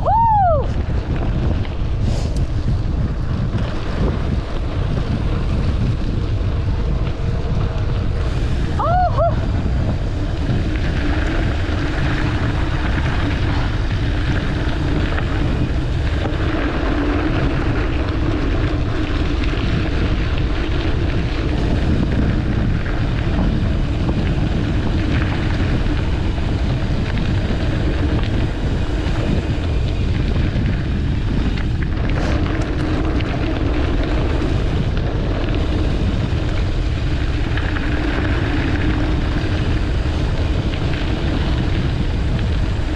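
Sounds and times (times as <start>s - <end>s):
tyres rumbling on dirt: 0.0s - 42.9s
wind rushing over microphone: 0.0s - 42.9s.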